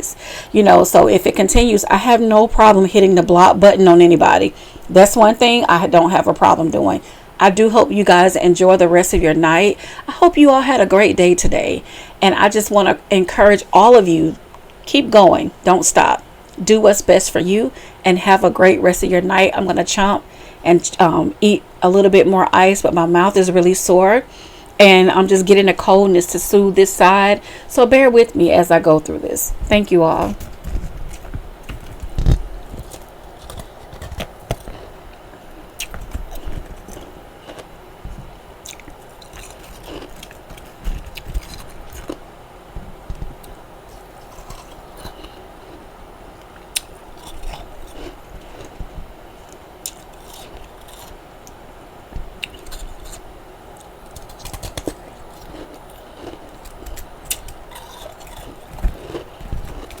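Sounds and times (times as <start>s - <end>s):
person chewing crunchy ice: 35.8s - 37.7s, 38.7s - 42.2s, 43.9s - 45.8s, 46.8s - 48.8s, 49.8s - 51.2s, 54.2s - 60.0s.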